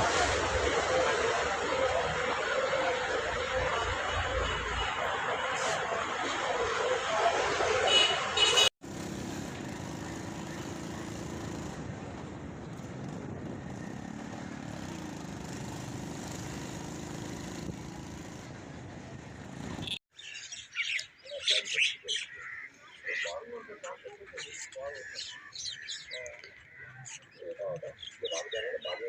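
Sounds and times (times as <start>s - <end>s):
vehicle running noise: 0.0s - 20.0s.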